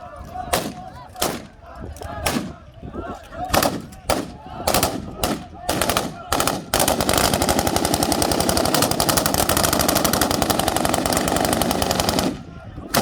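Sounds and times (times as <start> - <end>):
automatic gunfire bursts: 3.6 - 13.0.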